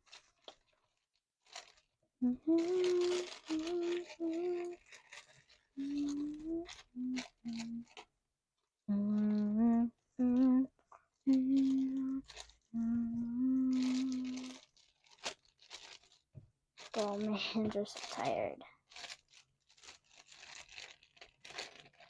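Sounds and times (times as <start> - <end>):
person humming: 2.2 - 4.8, 5.8 - 7.9, 8.9 - 10.7, 11.3 - 14.6.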